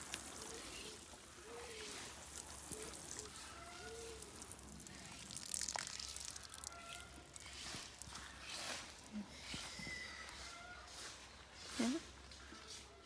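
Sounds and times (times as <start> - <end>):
water trickling onto plants: 0.0 - 9.7.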